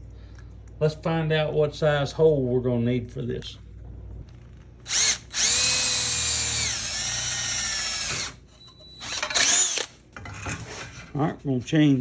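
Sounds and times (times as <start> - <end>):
electric drill motor whining: 4.9 - 9.9.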